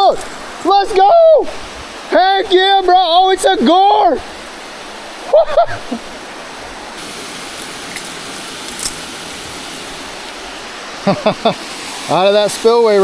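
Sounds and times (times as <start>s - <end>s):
person exclaiming: 0.0s - 1.6s, 2.2s - 4.3s
fast-flowing river water: 0.0s - 13.0s.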